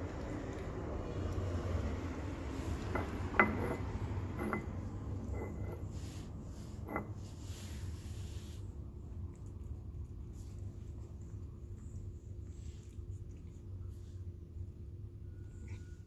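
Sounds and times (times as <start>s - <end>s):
cat eating wet food: 0.0s - 15.8s
steady low hum: 0.0s - 16.0s
dish clinking: 2.9s - 5.8s.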